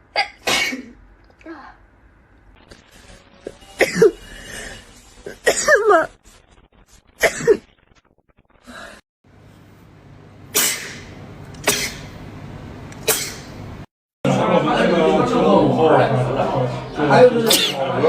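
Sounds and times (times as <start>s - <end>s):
woman sneezing: 10.6s - 12.1s, 13.1s - 13.5s.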